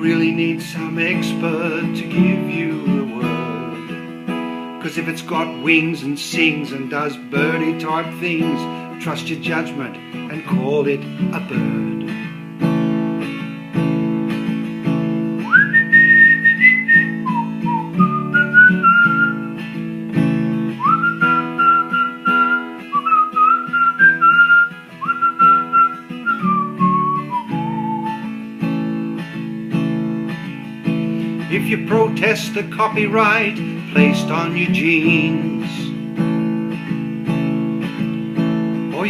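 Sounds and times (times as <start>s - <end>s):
acoustic guitar strumming: 0.0s - 39.0s
whistled melody: 15.4s - 19.6s, 20.7s - 28.4s.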